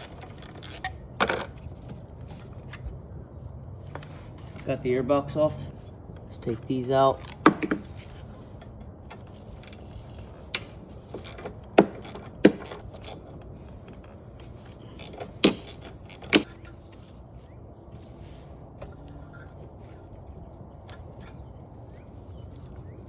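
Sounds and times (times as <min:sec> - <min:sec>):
tools and metal parts clinking: 0:00.0 - 0:02.9, 0:08.6 - 0:17.0.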